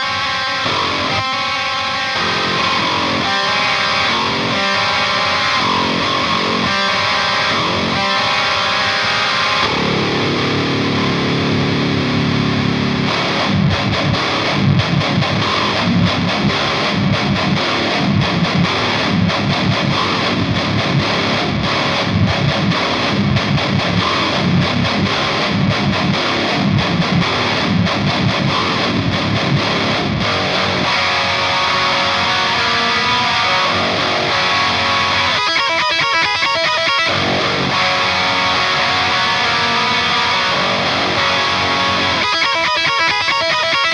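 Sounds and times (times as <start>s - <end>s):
heavy distorted electric guitars: 0.0s - 43.9s.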